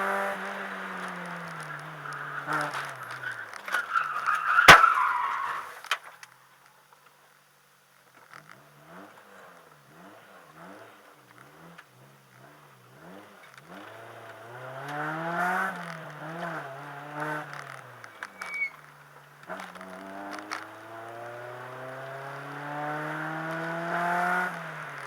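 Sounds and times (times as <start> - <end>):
car engine revving: 0.0 - 5.7, 12.4 - 25.0.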